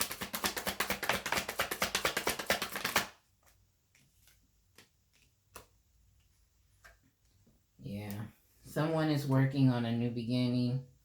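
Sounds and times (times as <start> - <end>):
cards being shuffled: 0.0 - 7.0.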